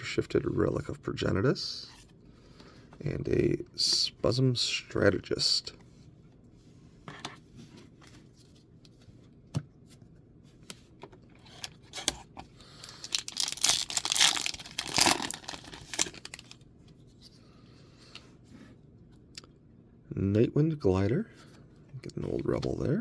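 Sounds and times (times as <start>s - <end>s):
foil wrapper tearing and crinkling: 12.8s - 16.6s.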